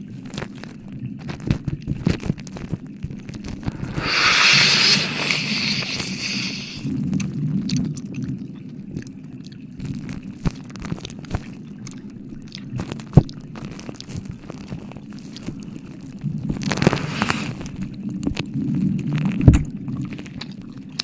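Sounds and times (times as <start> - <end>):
blowing on microphone: 3.6 - 6.9.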